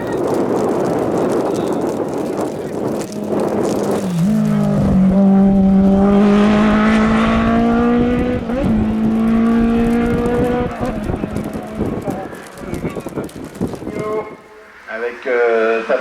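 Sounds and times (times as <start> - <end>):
race car engine revving: 3.6 - 13.3.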